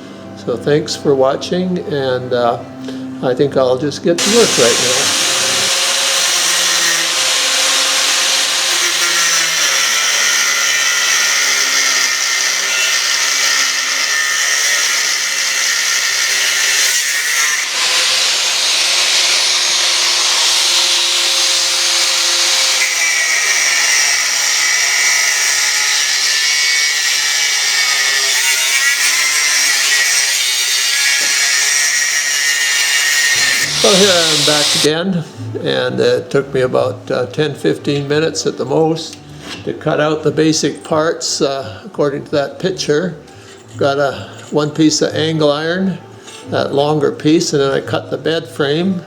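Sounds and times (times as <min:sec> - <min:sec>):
angle grinder cutting steel: 0:04.2 - 0:34.9.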